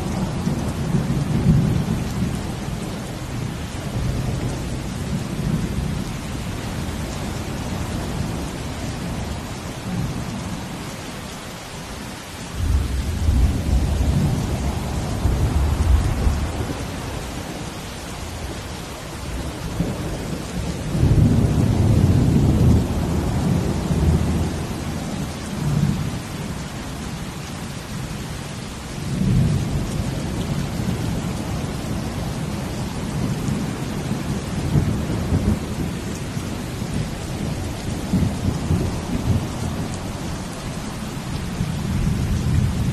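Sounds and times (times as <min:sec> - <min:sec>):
steady rain: 0:00.0 - 0:42.9
deep low thunder rumbles: 0:12.6 - 0:17.3, 0:19.4 - 0:24.9.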